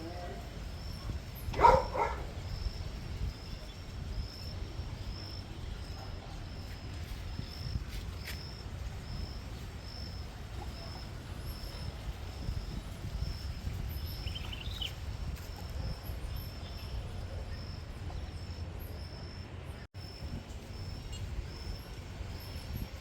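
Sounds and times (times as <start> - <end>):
faint high chirp: 0.8 - 23.0
dog barking: 1.5 - 2.4.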